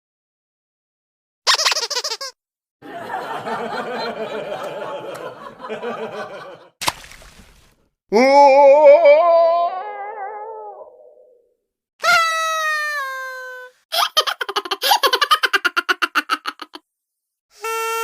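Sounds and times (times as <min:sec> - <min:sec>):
high-pitched laughter: 0:01.5 - 0:02.4, 0:12.0 - 0:16.8
layered laughter: 0:01.5 - 0:06.8, 0:13.9 - 0:16.8
wavering cry sliding down: 0:08.4 - 0:11.4.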